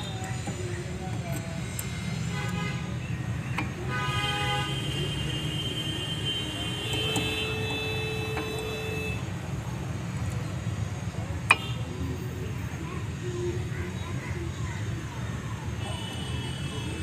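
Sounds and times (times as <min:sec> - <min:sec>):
low rumble of vehicles: 0:00.0 - 0:17.0
vehicle horn: 0:02.1 - 0:09.3.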